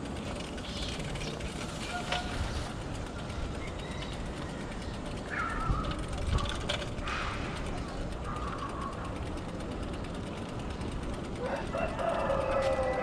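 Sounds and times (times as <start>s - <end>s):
bicycle rumbling over rough path: 0.0s - 13.0s
short high squeaks: 1.8s - 2.8s.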